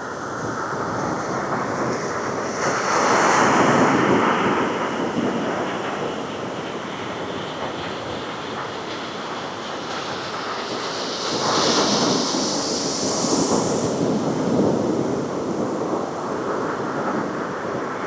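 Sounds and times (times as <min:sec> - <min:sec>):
ocean waves surf hiss: 0:08.6 - 0:18.0.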